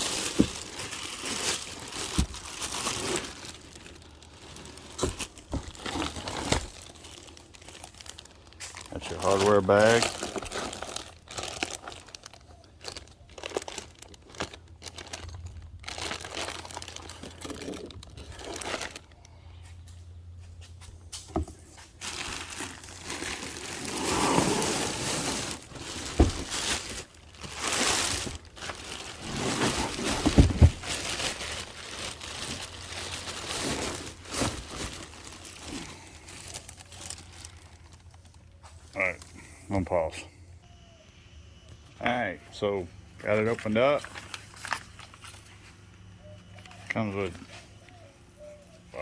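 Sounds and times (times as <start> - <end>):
packaging crinkling and tearing: 0.0 - 19.4, 21.8 - 39.2, 43.8 - 45.8.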